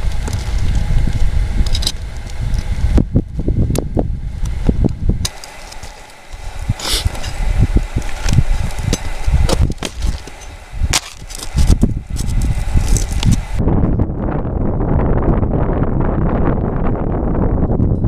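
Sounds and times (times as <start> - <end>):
wind buffeting microphone: 0.0 - 18.0
roof shingles being torn off: 8.0 - 13.4.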